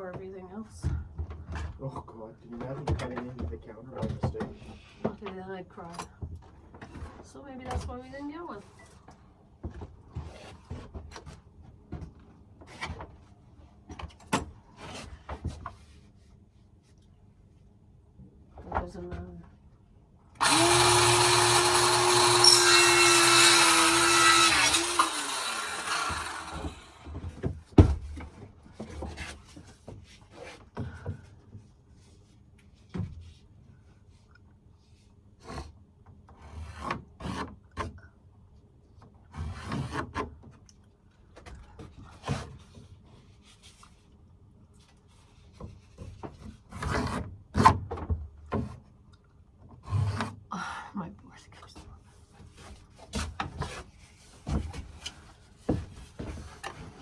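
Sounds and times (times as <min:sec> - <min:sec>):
power tool motor winding down: 0:20.4 - 0:27.2.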